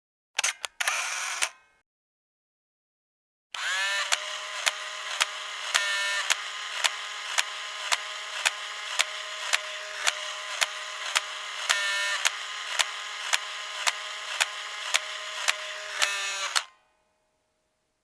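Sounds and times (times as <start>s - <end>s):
sharp mechanical click: 0.4s - 1.6s, 3.6s - 16.7s
film camera whirring: 0.8s - 1.5s, 3.6s - 16.8s.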